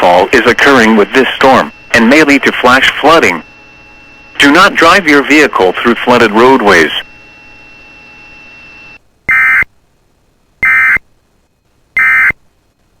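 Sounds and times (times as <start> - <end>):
faint hum with high tone: 0.0 - 13.0
buzzing digital data tones: 0.6 - 9.7, 10.6 - 11.0, 12.0 - 12.4.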